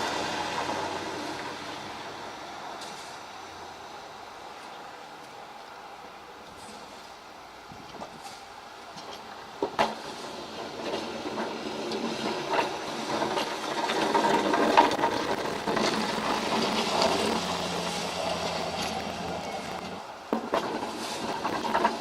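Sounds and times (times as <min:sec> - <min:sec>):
plow blade scraping snow: 0:00.0 - 0:04.0, 0:09.8 - 0:22.0
truck engine: 0:00.0 - 0:07.6, 0:08.2 - 0:22.0.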